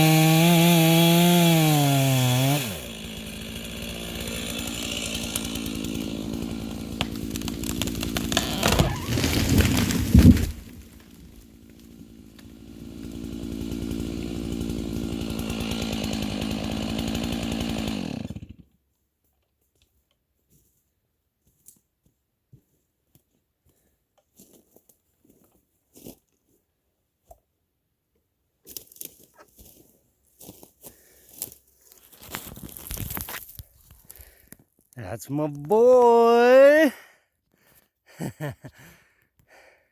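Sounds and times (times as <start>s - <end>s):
two-stroke chainsaw running: 0.0s - 18.7s.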